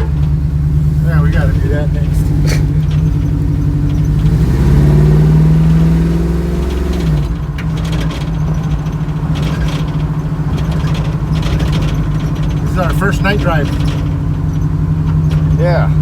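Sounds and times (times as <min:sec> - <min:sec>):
car engine accelerating: 0:00.0 - 0:16.0.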